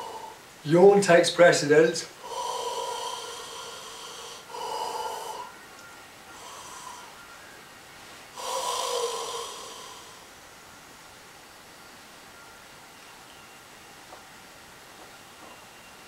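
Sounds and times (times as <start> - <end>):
person exhaling forcefully: 2.2 - 5.5, 6.4 - 7.2, 8.4 - 10.3.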